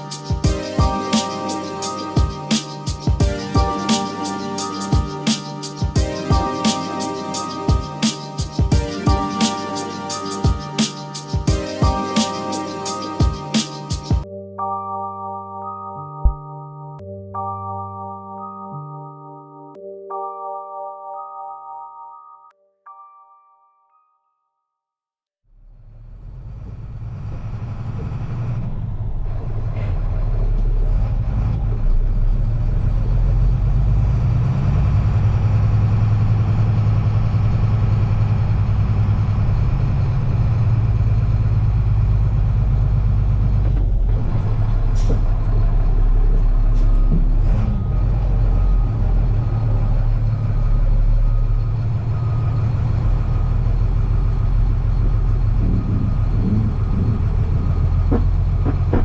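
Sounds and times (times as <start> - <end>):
diesel engine rumbling: 25.8 - 59.0.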